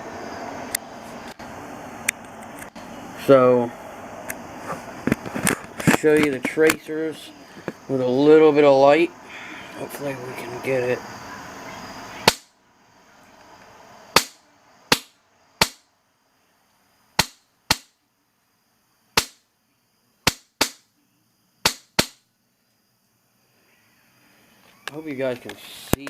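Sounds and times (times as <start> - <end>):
airsoft gun shots: 12.2 - 12.5, 14.1 - 15.8, 17.2 - 18.0, 19.2 - 19.4, 20.3 - 20.8, 21.6 - 22.2.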